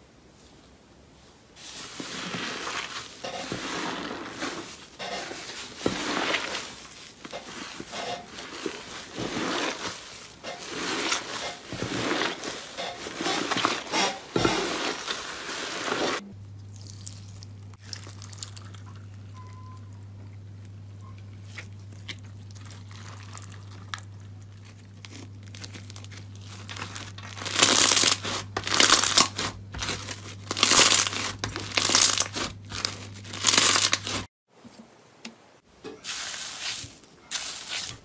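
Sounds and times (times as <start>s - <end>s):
crunchy material crinkling by hand: 1.6s - 18.8s, 21.2s - 34.3s.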